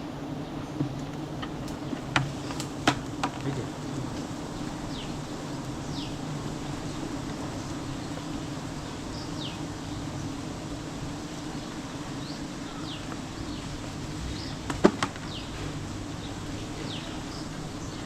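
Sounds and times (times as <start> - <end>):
bees buzzing: 0.0 - 18.0
falling bird chirps: 11.6 - 18.0.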